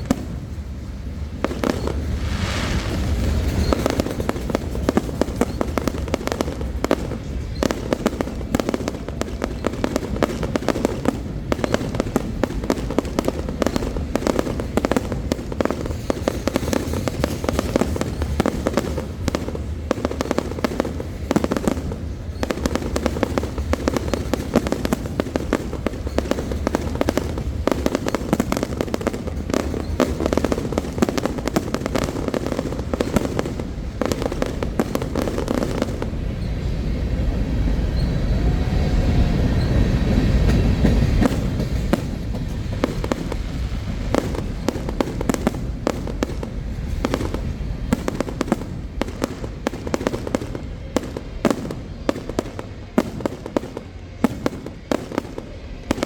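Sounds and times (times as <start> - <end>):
heavy low rumble: 0.0 - 7.4
fireworks bangs and crackling: 0.0 - 38.5, 39.6 - 56.0.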